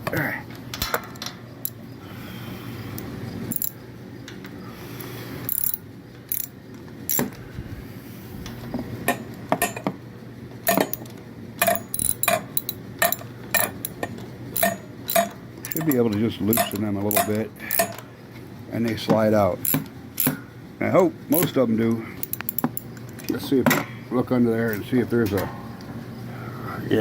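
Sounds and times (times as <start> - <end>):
wrench clicking on bolts: 3.0 - 3.8, 5.5 - 7.3, 10.7 - 18.0, 19.6 - 20.4, 22.2 - 22.9.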